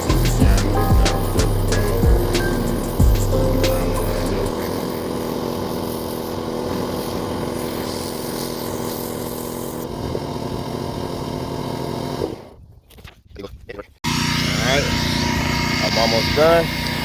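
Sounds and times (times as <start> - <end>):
spray hissing: 0.0 - 9.9
pressure washer engine running: 0.0 - 12.5, 14.1 - 17.0.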